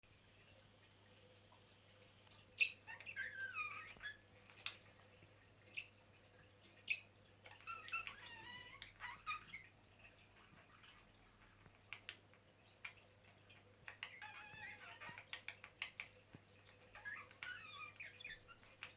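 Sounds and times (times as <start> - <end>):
budgerigars chattering and warbling: 6.9 - 9.7, 13.9 - 18.9.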